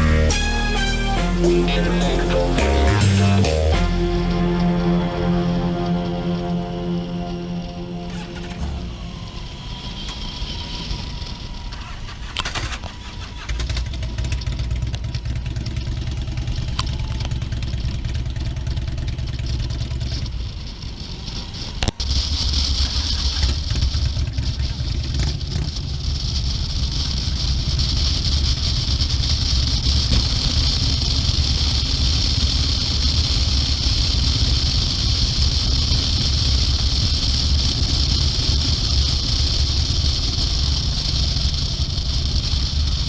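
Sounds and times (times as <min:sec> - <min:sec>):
motorcycle engine rumbling: 0:00.0 - 0:43.0
steady hiss: 0:25.8 - 0:43.0.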